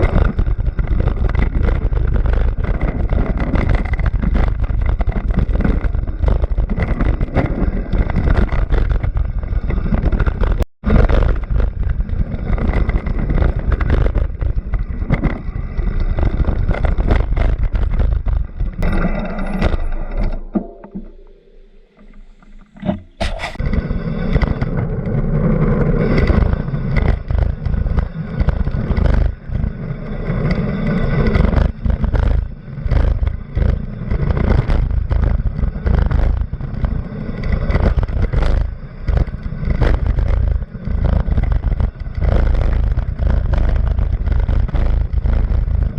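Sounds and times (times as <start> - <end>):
rough crackling racing engine: 0.0 - 45.9.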